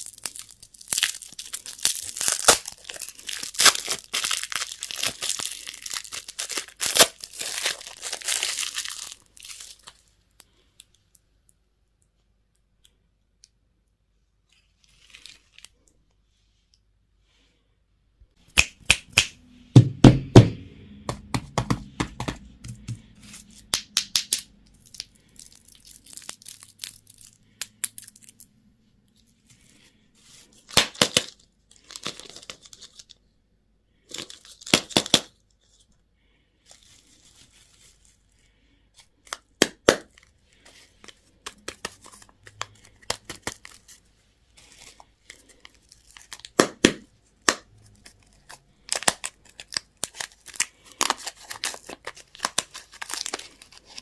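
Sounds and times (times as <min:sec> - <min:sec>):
candy wrappers crinkling: 0:00.0 - 0:11.2, 0:14.5 - 0:16.0, 0:21.6 - 0:28.5, 0:29.1 - 0:33.2, 0:34.0 - 0:35.9, 0:36.6 - 0:54.0.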